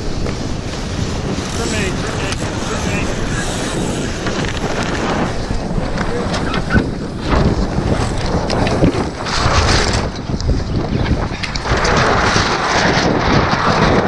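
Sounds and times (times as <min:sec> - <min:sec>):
boat rushing through waves: 0:00.0 - 0:10.9
wind buffeting microphone: 0:00.0 - 0:14.0.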